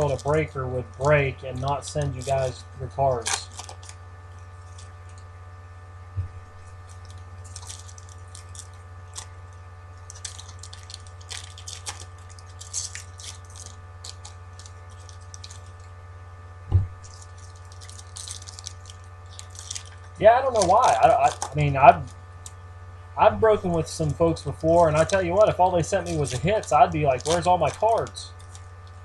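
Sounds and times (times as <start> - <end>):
foil wrappers crinkling and tearing: 0.0 - 5.3, 6.6 - 16.0, 16.9 - 29.0
electrical hum: 0.0 - 29.0
dull thump: 6.2 - 6.4, 16.6 - 17.0.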